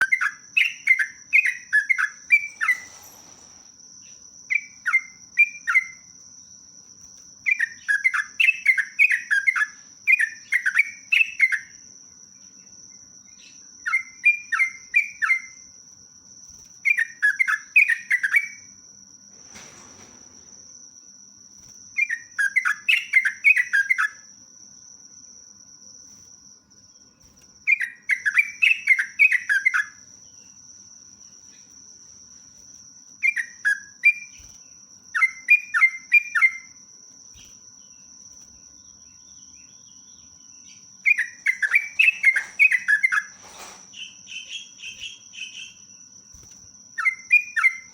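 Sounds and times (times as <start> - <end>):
bulbul singing: 0.0 - 3.4, 7.5 - 15.7, 16.9 - 18.7, 22.0 - 24.3, 26.9 - 32.0, 33.1 - 47.9.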